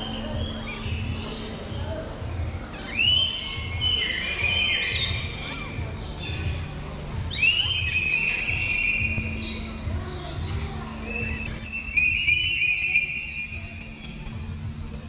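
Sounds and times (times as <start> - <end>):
flock of birds chirping: 0.0 - 15.0
low background rumble: 0.0 - 15.0
loud rising whistled calls: 2.6 - 14.4.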